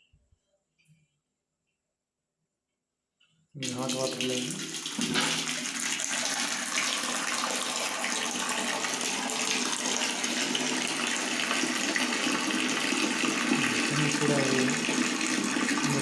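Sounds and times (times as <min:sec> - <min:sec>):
water running from heater outlet: 0:03.6 - 0:16.0.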